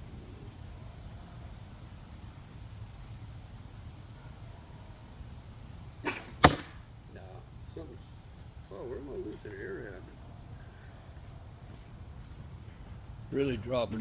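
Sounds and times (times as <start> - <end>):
puff of breath through blowgun: 6.0 - 6.8.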